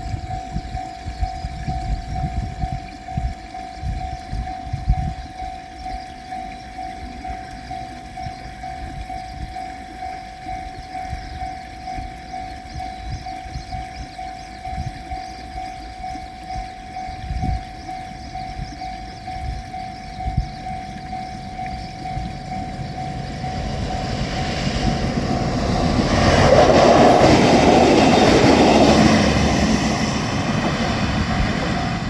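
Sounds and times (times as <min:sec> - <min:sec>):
railroad crossing bell ringing: 0:00.0 - 0:32.0
low rumble: 0:17.0 - 0:32.0.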